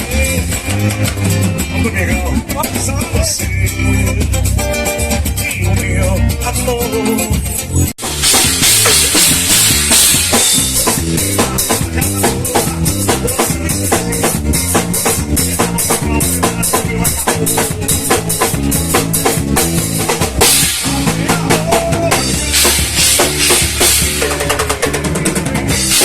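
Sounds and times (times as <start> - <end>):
bass drum and snare beat: 0.0 - 26.0
bass notes: 0.0 - 26.0
live instrumental band music: 0.0 - 26.0
cymbals washing: 8.0 - 13.2.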